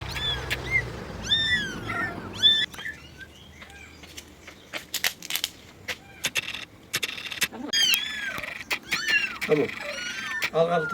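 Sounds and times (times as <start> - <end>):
cats mewing: 0.0 - 3.0, 7.5 - 10.9.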